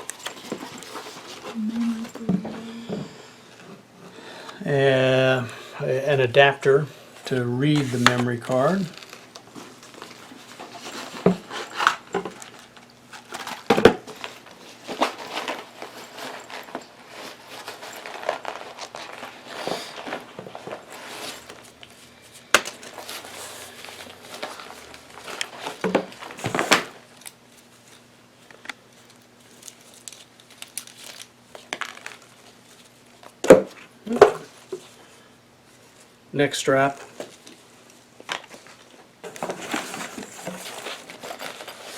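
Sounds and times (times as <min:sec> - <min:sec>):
plastic packaging crinkling: 0:07.6 - 0:33.4, 0:37.0 - 0:41.9
items clicking and knocking: 0:08.0 - 0:34.9, 0:38.2 - 0:41.9.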